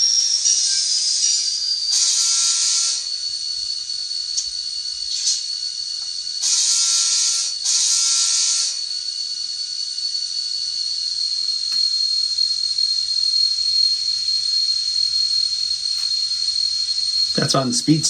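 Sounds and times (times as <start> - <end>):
hissy diesel engine sound: 11.5 - 18.0.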